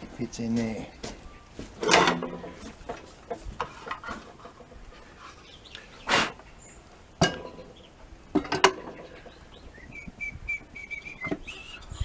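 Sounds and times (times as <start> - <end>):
bird chirping: 5.2 - 12.0.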